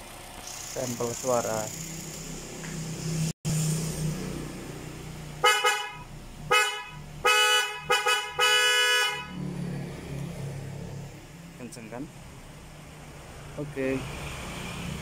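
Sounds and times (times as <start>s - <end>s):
snail horn blasts: 5.4s - 9.4s.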